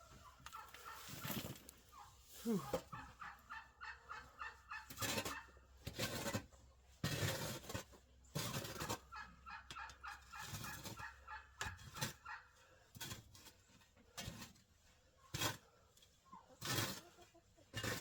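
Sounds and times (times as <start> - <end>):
poultry calling: 0.0 - 5.6
shovel scraping and digging: 0.5 - 1.8, 4.8 - 9.1, 12.9 - 14.7, 15.3 - 15.7, 16.6 - 17.1, 17.7 - 18.0.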